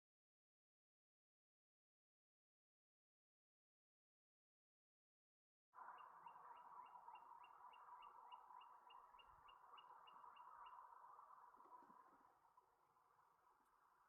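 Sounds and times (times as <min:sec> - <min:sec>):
faint steady hiss: 0:05.8 - 0:14.0.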